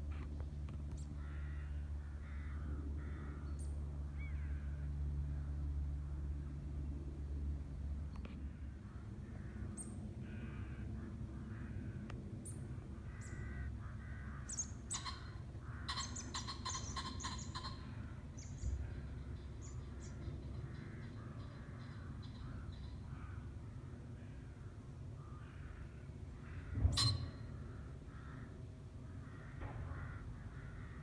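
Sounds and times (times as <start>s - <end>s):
steady low rumble: 0.0s - 31.0s
crows cawing: 1.2s - 3.5s, 8.6s - 12.0s, 13.0s - 31.0s.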